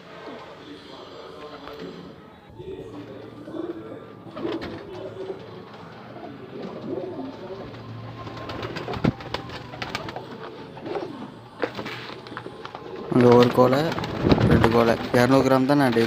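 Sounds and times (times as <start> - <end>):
pigeons cooing: 0.0 - 16.0.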